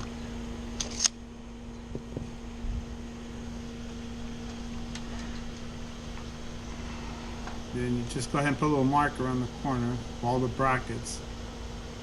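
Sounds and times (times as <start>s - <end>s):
steady mechanical hum: 0.0s - 12.0s.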